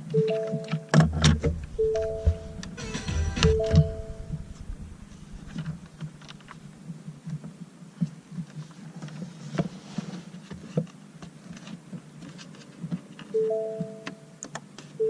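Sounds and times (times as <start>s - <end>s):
low steady hum: 1.1s - 7.4s.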